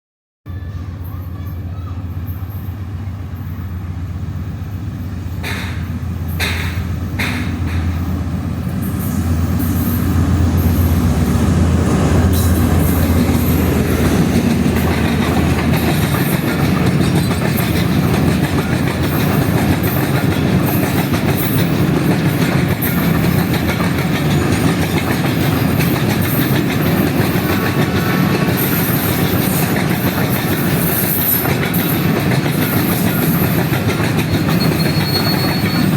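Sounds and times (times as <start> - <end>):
locomotive engine hum: 0.5 - 35.9
train wheels clickety-clack: 5.3 - 8.2, 8.9 - 35.9.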